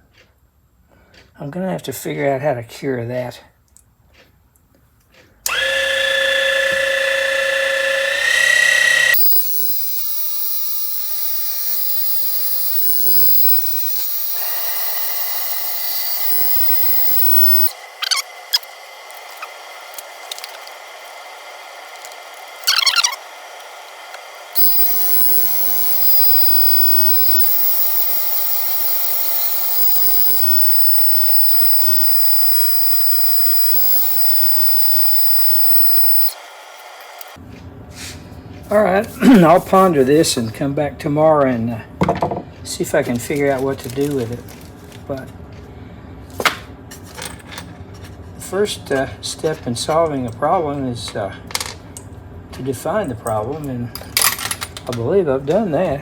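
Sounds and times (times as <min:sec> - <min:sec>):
lathe motor whine: 0:05.5 - 0:17.8, 0:24.6 - 0:37.4
spindle humming: 0:05.5 - 0:18.2, 0:24.6 - 0:36.4.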